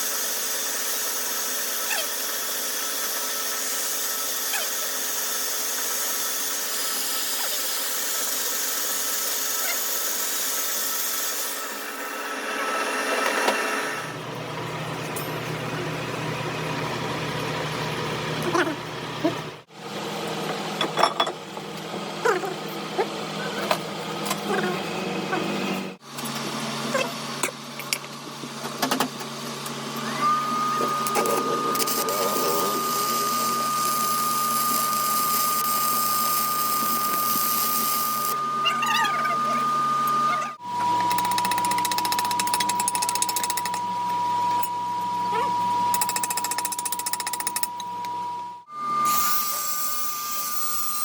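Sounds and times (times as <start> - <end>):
machine whining and humming: 0.6 - 20.4, 28.2 - 51.0
hissing machine noise: 29.8 - 42.8.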